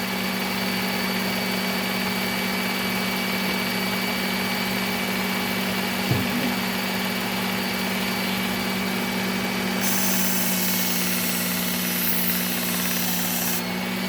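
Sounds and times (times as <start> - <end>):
belt grinder running: 6.5 - 14.0.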